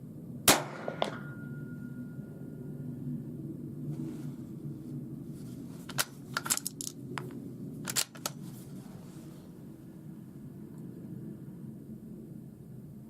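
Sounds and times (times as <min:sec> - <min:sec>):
rifle bolt metallic clicks: 0:07.9 - 0:08.4.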